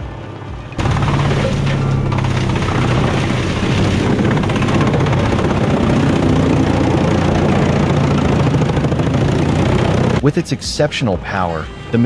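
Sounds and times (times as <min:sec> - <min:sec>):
clatter of wood breaking: 0:00.8 - 0:10.2
log shredder engine hum: 0:00.8 - 0:10.7.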